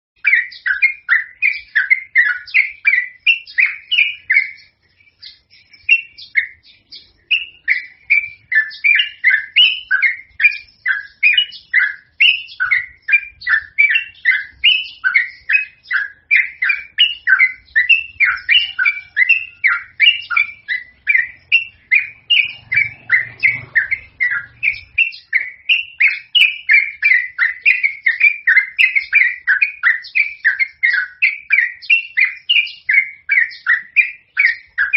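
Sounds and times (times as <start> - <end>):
bird singing bubbly chirps: 0.2 - 34.9.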